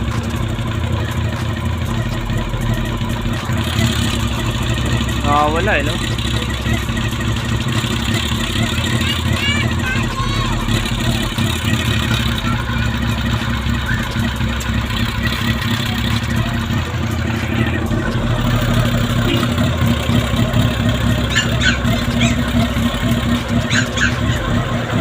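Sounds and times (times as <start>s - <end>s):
motorcycle engine rattling: 0.0s - 25.0s.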